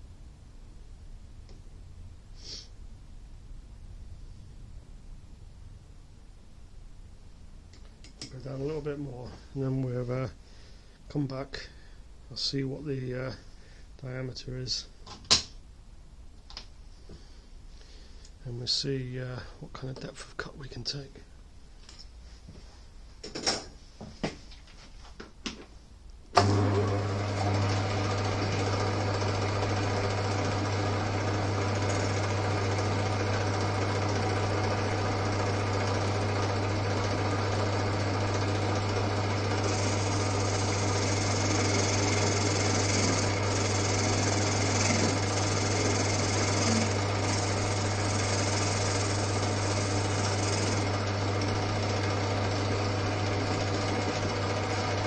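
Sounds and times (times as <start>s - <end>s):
lathe motor humming: 26.4s - 55.0s
lathe cutting hiss: 37.1s - 51.5s.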